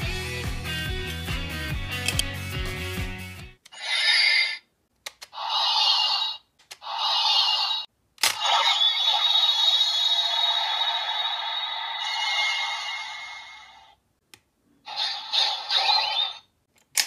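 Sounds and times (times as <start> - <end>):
electronic toy sound effects: 3.7 - 4.6, 5.4 - 14.0, 14.9 - 16.5.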